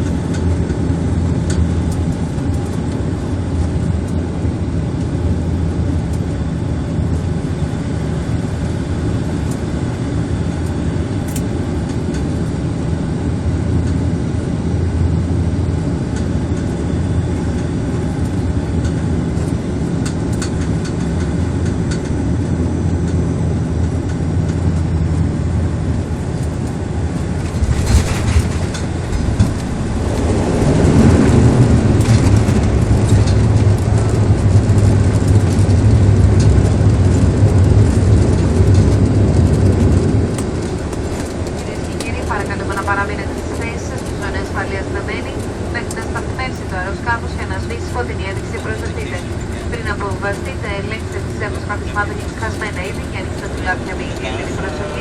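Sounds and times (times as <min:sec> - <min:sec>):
turboprop engines droning: 0:00.0 - 0:55.0.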